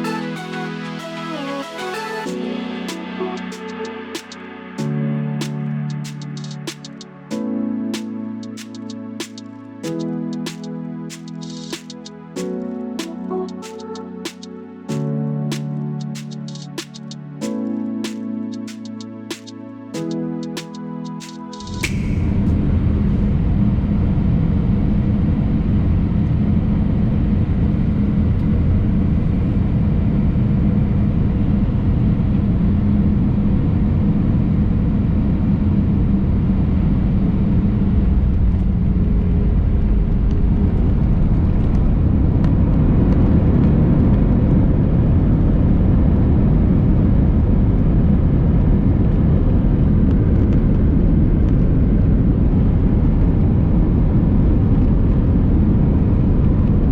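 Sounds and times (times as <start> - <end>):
low hum: 21.7 - 56.9.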